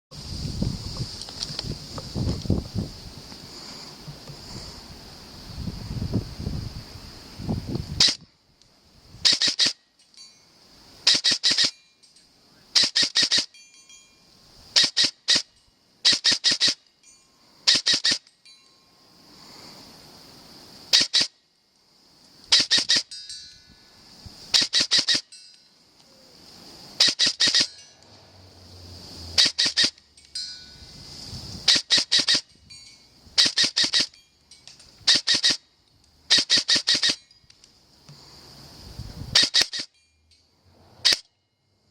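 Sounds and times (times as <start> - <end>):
steady high-pitched whine: 0.3 - 41.9
airsoft gun firing sharp cracks: 9.2 - 9.8, 11.0 - 11.7, 12.8 - 13.5, 14.8 - 16.8, 17.7 - 18.2, 20.9 - 21.4, 22.5 - 23.1, 24.5 - 25.2, 27.0 - 27.8, 29.4 - 30.0, 33.4 - 34.1, 35.1 - 35.6, 36.3 - 37.2, 39.4 - 39.9.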